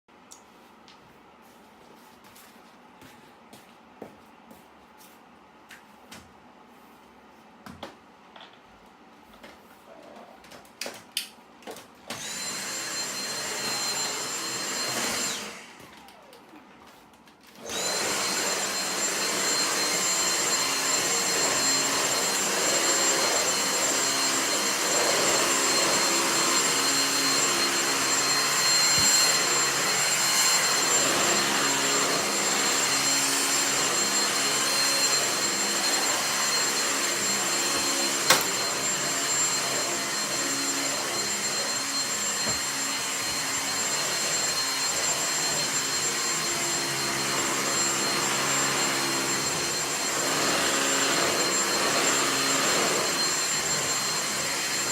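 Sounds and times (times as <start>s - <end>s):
vacuum cleaner running: 11.7s - 54.9s.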